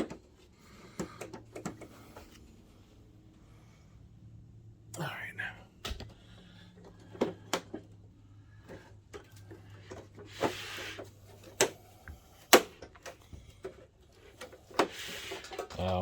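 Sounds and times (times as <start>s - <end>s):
plastic parts clicking and knocking: 0.0s - 2.4s, 8.6s - 16.0s.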